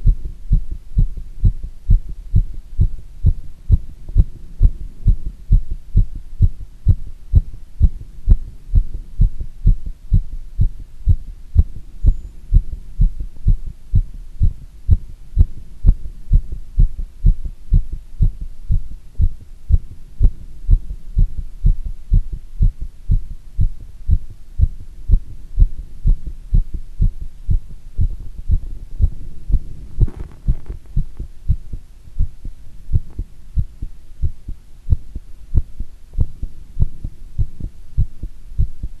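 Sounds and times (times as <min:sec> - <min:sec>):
heartbeat thumps: 0:00.0 - 0:39.0
brief rustle: 0:29.8 - 0:31.0.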